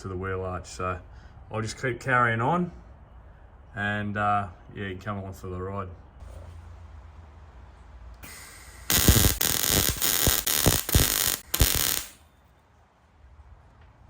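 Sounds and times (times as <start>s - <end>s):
welding arc crackling and buzzing: 8.2s - 12.2s.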